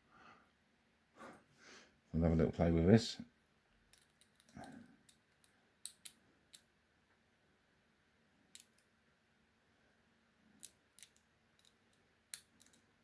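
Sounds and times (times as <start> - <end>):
lock pick clicking in padlock: 5.8 - 6.7.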